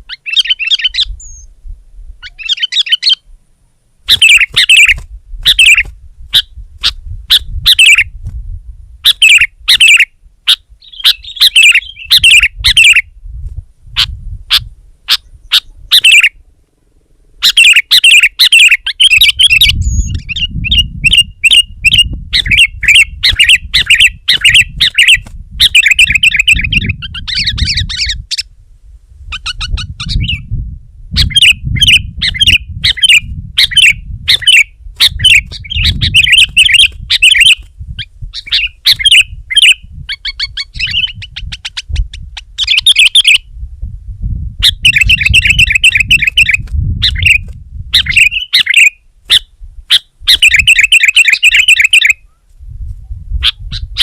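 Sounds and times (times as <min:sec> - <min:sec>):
bird chattering calls: 0:00.1 - 0:01.5, 0:02.2 - 0:03.2, 0:04.1 - 0:08.0, 0:09.0 - 0:13.0, 0:14.0 - 0:16.3, 0:17.4 - 0:28.4, 0:31.2 - 0:37.6, 0:38.4 - 0:41.9, 0:42.6 - 0:43.4, 0:48.0 - 0:52.2.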